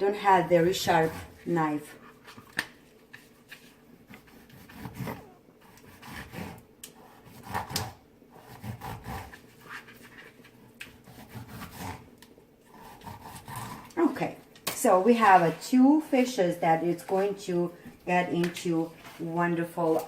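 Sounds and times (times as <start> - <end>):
knife sawing through fish skin: 0.5 - 1.7, 4.1 - 10.3, 11.0 - 12.1, 12.7 - 14.0.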